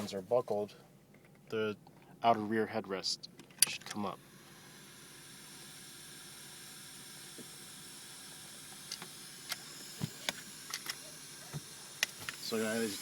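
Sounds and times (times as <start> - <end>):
air hissing from leak: 3.9 - 13.0.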